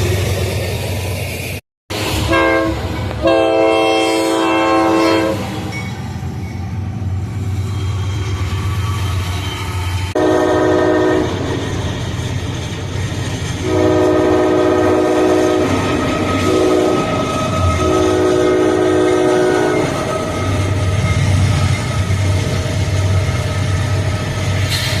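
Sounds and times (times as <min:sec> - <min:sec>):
train rumble: 0:00.0 - 0:25.0
locomotive air horn blasts: 0:01.9 - 0:05.8, 0:10.2 - 0:11.4, 0:13.6 - 0:20.1.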